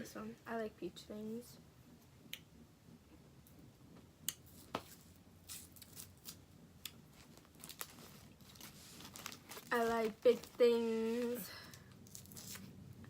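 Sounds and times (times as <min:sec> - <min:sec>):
plastic wrapper crinkling: 0:04.5 - 0:06.4, 0:07.1 - 0:12.8.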